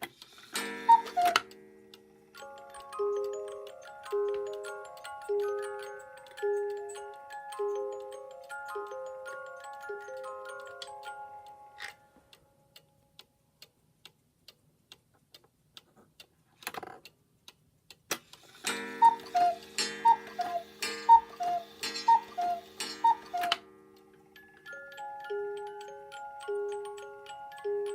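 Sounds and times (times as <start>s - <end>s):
clock ticking: 0.0s - 27.9s
cuckoo clock call: 0.5s - 1.7s, 2.4s - 12.5s, 18.6s - 27.9s.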